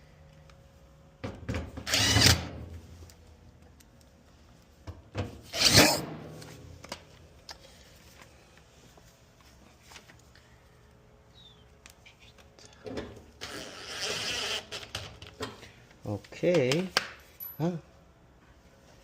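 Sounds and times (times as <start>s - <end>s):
power drill driving screws: 1.8s - 2.5s, 5.5s - 6.0s.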